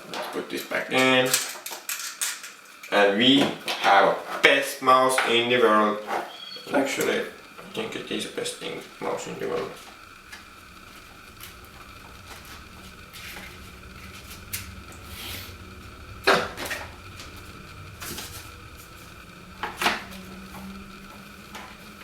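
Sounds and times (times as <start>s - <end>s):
plastic objects clicking and knocking: 1.0s - 2.8s.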